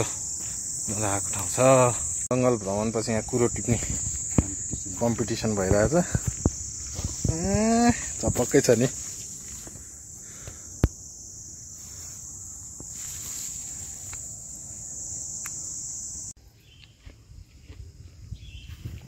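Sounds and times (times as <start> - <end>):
insects buzzing: 0.0 - 19.0
faint footsteps: 0.4 - 0.8, 3.4 - 11.0.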